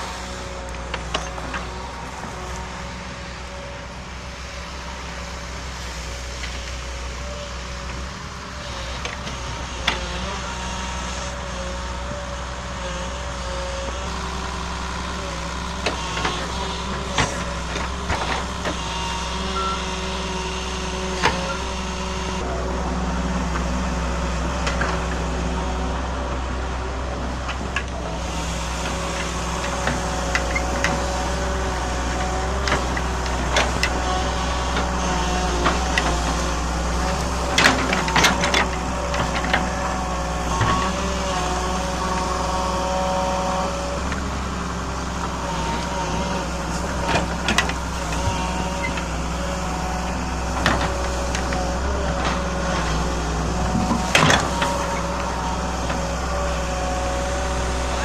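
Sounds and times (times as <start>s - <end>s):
diesel engine running: 0.0s - 58.0s
hydraulic whining tones: 12.8s - 58.0s.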